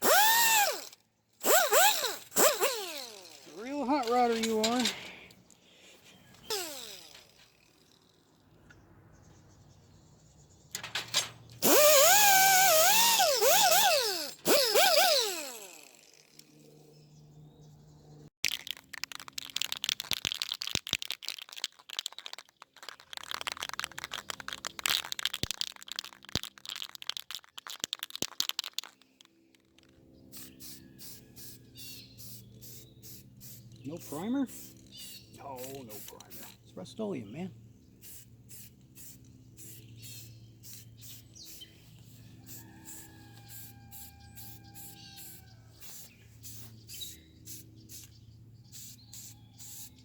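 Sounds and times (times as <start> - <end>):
spray paint spraying: 11.6 - 15.2, 18.4 - 29.7, 30.3 - 36.6, 38.0 - 50.0
spray can ball rattling: 18.4 - 36.6, 38.0 - 41.7, 42.5 - 48.2, 48.8 - 50.0.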